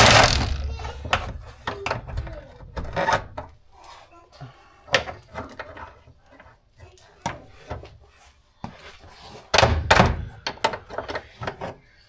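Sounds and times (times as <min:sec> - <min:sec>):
rough scraping clatter: 0:00.0 - 0:01.4.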